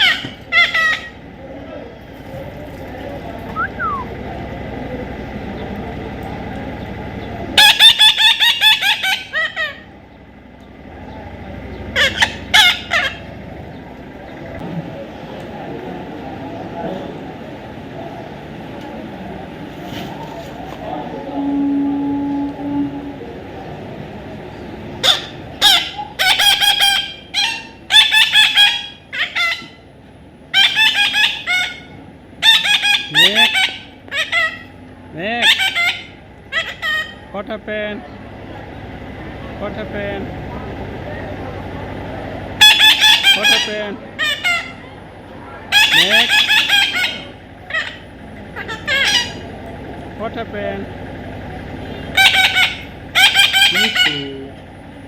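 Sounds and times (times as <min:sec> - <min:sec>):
parrot squawking: 0:00.0 - 0:01.3, 0:07.5 - 0:10.0, 0:11.8 - 0:13.4, 0:25.0 - 0:29.8, 0:30.5 - 0:34.8, 0:35.4 - 0:37.3, 0:42.6 - 0:45.0, 0:45.6 - 0:49.5, 0:51.8 - 0:54.4.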